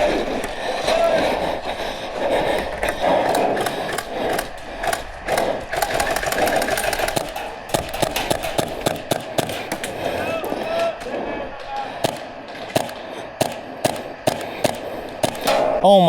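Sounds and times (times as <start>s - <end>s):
game arena background noise: 0.0s - 16.0s
airsoft gun shots snapping: 3.2s - 10.0s, 12.0s - 15.8s.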